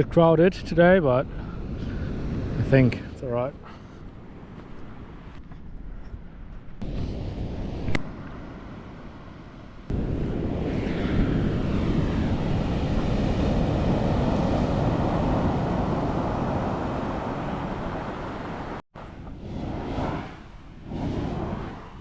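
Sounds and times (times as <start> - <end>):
wind buffeting microphone: 0.0 - 22.0
surf breaking on beach: 9.9 - 22.0.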